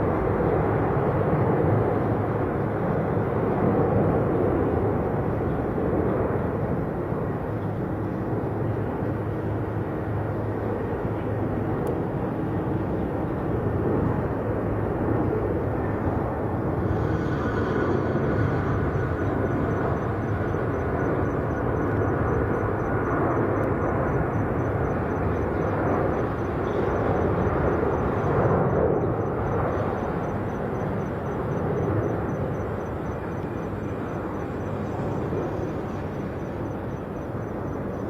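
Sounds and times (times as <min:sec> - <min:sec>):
jet engines rumbling: 0:00.0 - 0:38.0.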